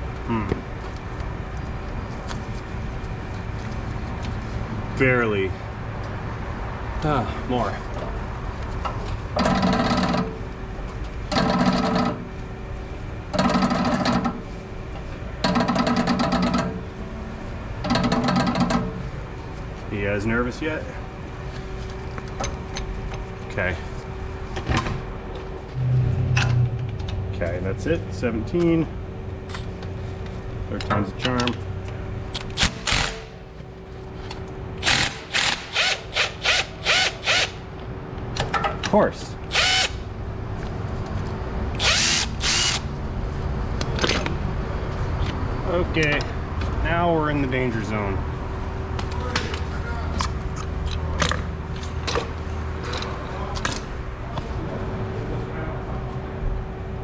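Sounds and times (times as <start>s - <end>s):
power tool motor bursts: 32.6s - 33.3s, 34.8s - 37.6s, 39.5s - 40.0s, 41.8s - 42.8s.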